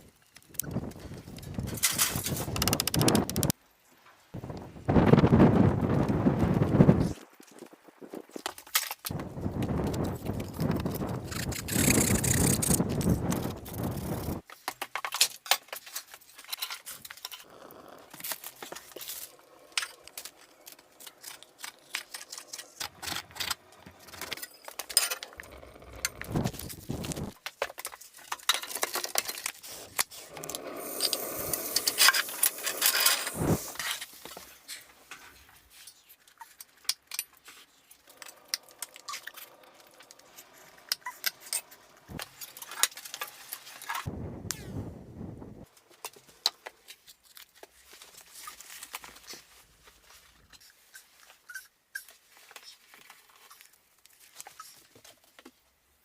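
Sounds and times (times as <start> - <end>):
hard objects clicking and scraping: 1.4 - 3.6, 9.8 - 17.5, 18.1 - 44.1.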